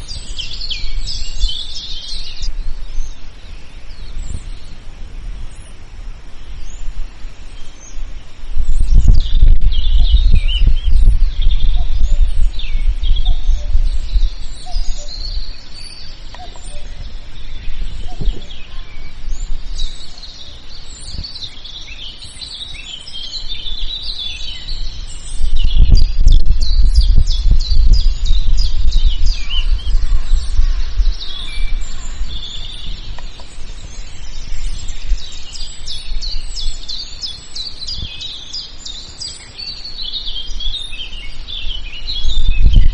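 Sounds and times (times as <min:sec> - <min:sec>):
small birds chirping and trilling: 0:00.0 - 0:42.9
loud low rumble: 0:08.6 - 0:15.5, 0:25.3 - 0:33.2.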